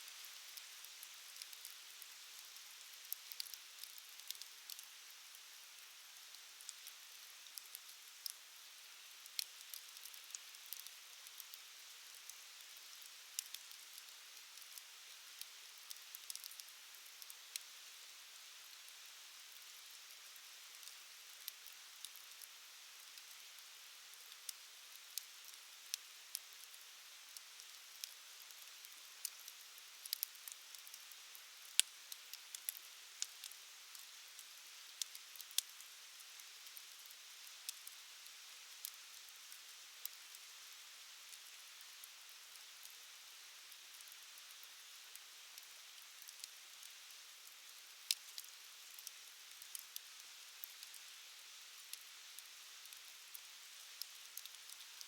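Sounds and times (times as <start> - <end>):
campfire crackling: 3.1 - 4.8, 9.3 - 11.5, 15.8 - 16.6, 30.0 - 31.0, 48.1 - 49.8, 50.6 - 51.0, 54.4 - 54.8.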